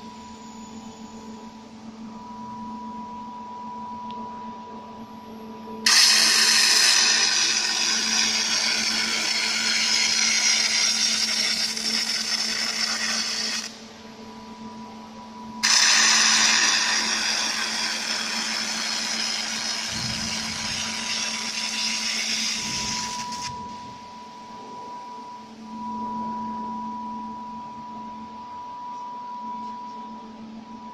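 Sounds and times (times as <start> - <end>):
laser welder whirring hiss: 5.8 - 13.8, 15.6 - 24.1.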